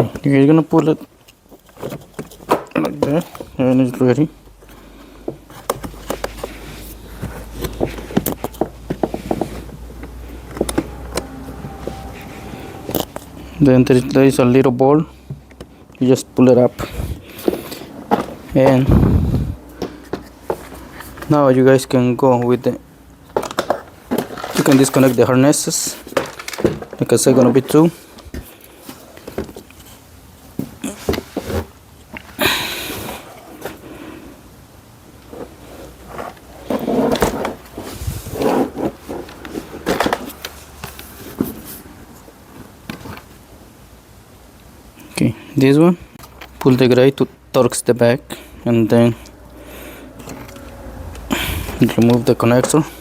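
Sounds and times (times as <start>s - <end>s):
plastic parts clicking and knocking: 23.3s - 25.2s, 26.0s - 28.5s
scraping rustle: 35.3s - 43.3s.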